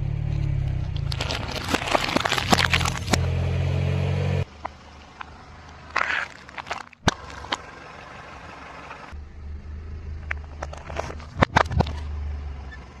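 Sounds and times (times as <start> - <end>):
car engine running low: 0.0 - 13.0
tyre crushing objects with pops: 1.0 - 3.3.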